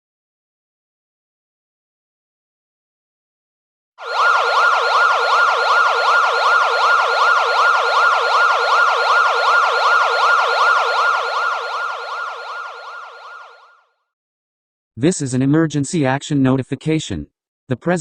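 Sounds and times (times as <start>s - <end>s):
electronic siren yelping: 4.0s - 13.9s.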